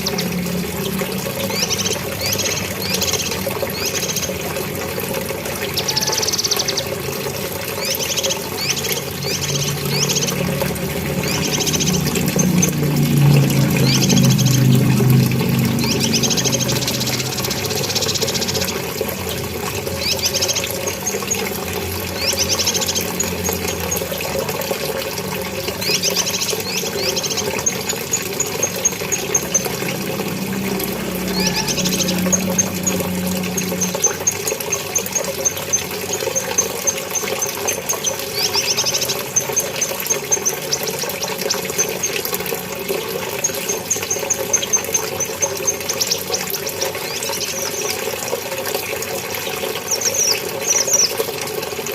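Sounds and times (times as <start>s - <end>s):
bird singing high phrases: 31.0s - 42.2s.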